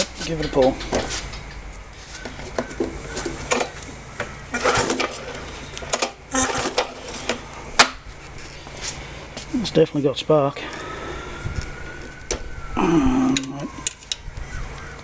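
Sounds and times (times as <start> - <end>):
lawnmower engine cranking: 2.6 - 8.0.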